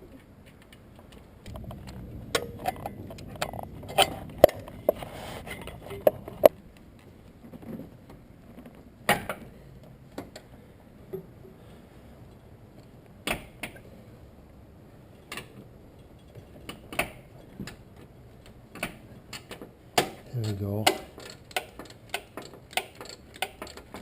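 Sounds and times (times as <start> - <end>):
metallic clicks of hand tools: 20.4 - 24.0.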